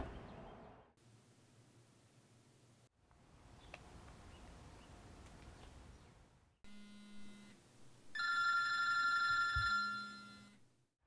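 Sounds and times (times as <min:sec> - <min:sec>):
telephone ringing: 0:06.7 - 0:10.6.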